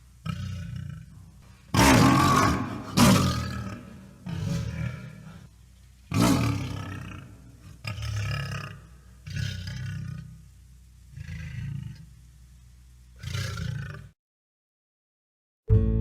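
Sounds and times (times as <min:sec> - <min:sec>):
tiger growling: 0:00.2 - 0:05.5, 0:06.1 - 0:10.5, 0:11.1 - 0:12.2, 0:13.2 - 0:14.1.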